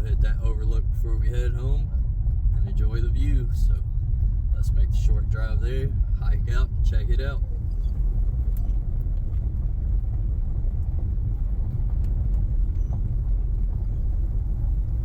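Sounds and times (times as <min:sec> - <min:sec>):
road and engine rumble: 0:00.0 - 0:15.0.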